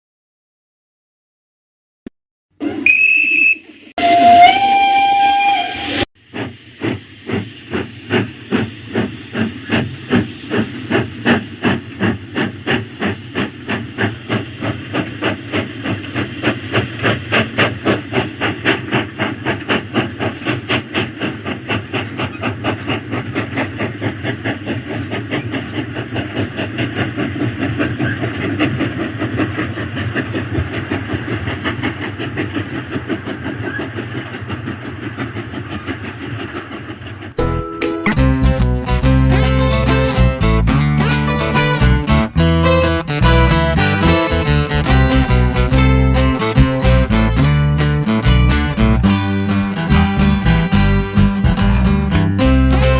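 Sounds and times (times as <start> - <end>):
toy train whistle: 4.0 - 5.9
steam train chuffing with hiss: 6.2 - 37.2.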